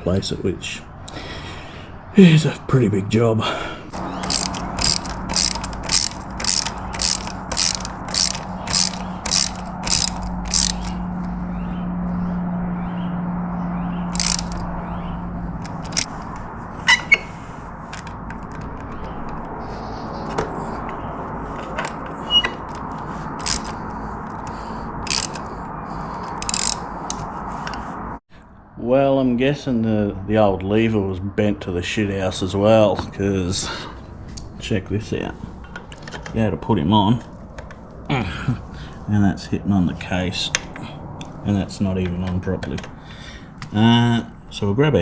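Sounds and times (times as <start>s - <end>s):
metallic clicks and clinks: 3.9s - 11.0s, 14.1s - 14.7s, 15.6s - 16.2s, 22.6s - 25.5s, 26.2s - 27.3s
ratchet wrench clicking: 3.9s - 11.1s, 14.1s - 14.8s, 15.6s - 17.2s, 22.3s - 27.8s.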